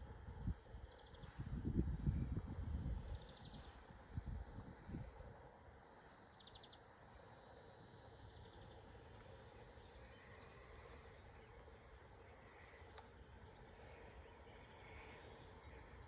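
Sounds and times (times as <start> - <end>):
high-pitched insect drone: 0.0 - 16.0.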